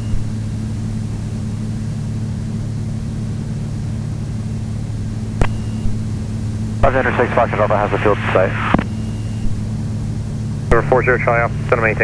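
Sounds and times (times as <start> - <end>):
aircraft engines droning: 0.0 - 12.0
radio click with short tone: 8.6 - 8.9.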